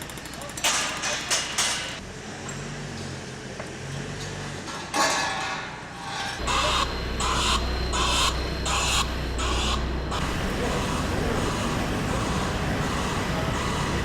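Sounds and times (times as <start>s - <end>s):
street background noise: 5.6s - 14.0s
electronic buzzing pulses: 6.4s - 14.0s
steady low hum: 6.4s - 14.0s.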